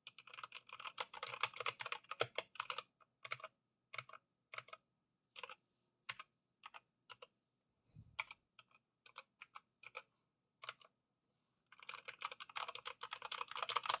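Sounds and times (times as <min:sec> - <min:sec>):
mechanical keyboard typing: 0:00.1 - 0:04.8, 0:11.8 - 0:14.0.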